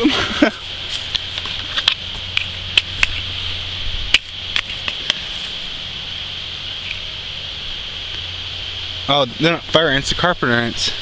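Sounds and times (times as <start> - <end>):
steady high hiss: 0.0 - 11.0.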